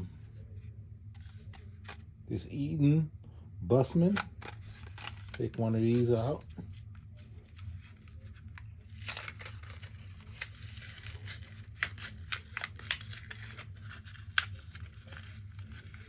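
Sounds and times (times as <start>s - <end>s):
plastic pack crinkling: 4.1s - 16.0s.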